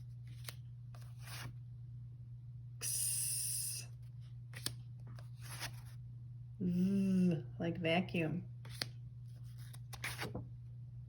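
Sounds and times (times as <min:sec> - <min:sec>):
low hum: 0:00.0 - 0:09.7
woman hissing: 0:02.8 - 0:03.9.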